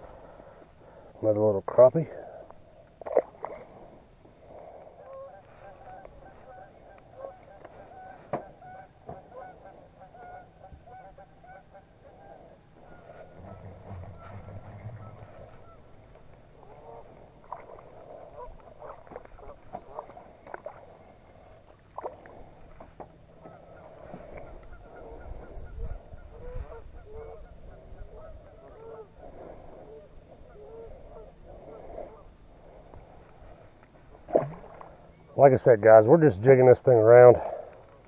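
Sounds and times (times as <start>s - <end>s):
geese honking: 4.5s - 20.9s.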